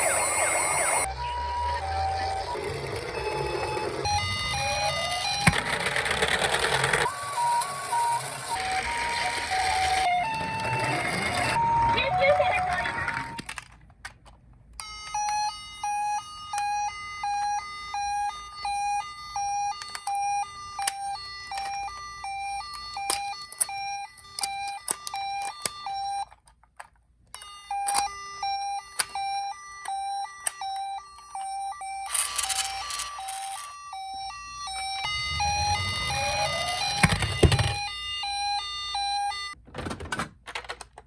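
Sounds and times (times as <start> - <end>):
toy two-tone siren: 0.0 - 13.5, 14.8 - 26.4, 27.3 - 39.6
plastic clicks: 13.4 - 14.9.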